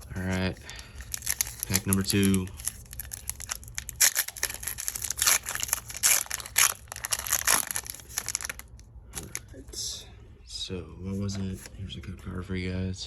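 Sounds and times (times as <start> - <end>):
foil wrapper crinkling: 0.0 - 9.6.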